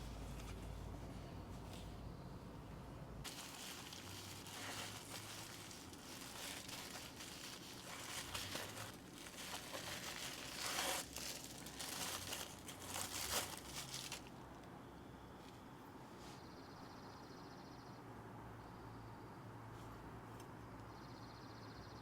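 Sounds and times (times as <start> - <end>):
wrapping crinkling and rustling: 3.2 - 14.6.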